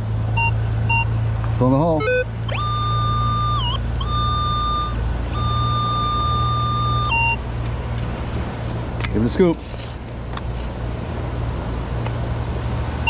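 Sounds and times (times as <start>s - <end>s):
metal detector target tone: 2.0s - 7.4s
short lower beep: 2.0s - 7.4s.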